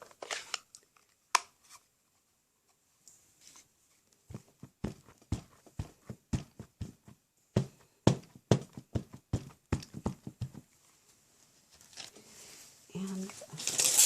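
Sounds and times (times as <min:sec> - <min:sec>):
rubber stamp tapping ink pad: 0:04.3 - 0:10.7.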